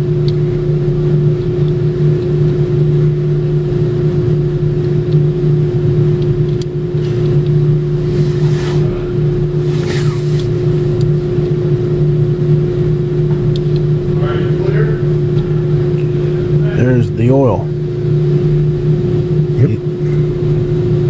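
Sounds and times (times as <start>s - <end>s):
motor humming: 2.4s - 18.8s
brief hisses: 8.0s - 10.6s.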